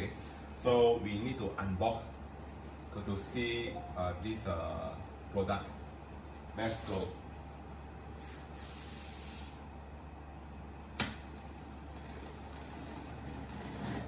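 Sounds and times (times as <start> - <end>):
cardboard scraping: 11.8 - 14.0.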